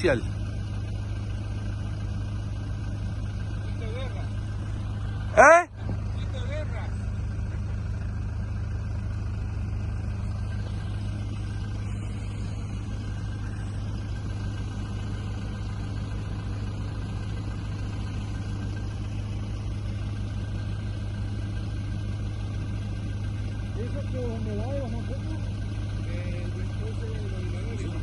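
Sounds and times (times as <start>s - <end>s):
vehicle engine running steadily: 0.0s - 28.0s.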